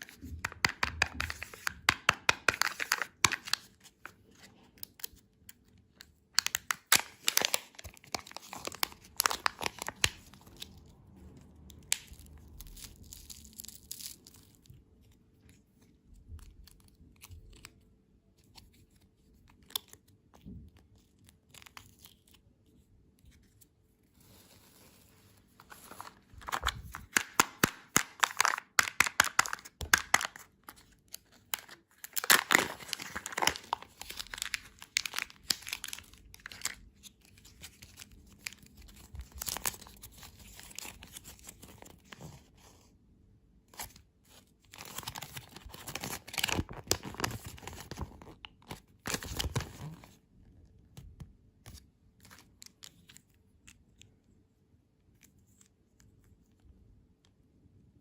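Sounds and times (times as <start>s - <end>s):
candy wrappers crinkling: 0.0s - 15.5s, 25.5s - 42.3s, 43.8s - 50.2s.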